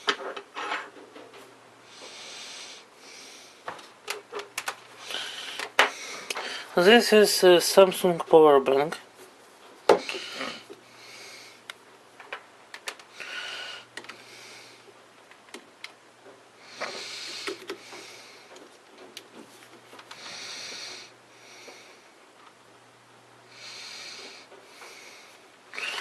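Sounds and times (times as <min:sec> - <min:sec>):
faint steady hum: 0:00.0 - 0:26.0
soft breaths through nose: 0:01.8 - 0:03.7
clicks and knocks from handling cables: 0:03.6 - 0:04.9, 0:12.2 - 0:13.1, 0:13.9 - 0:14.2.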